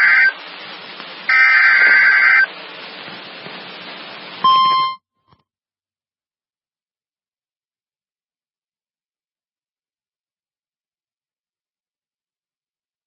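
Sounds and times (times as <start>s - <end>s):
buzzing digital data bursts: 0.0s - 0.4s, 1.3s - 2.5s
radio hiss: 0.0s - 4.9s
warning alarm tone: 1.3s - 2.5s.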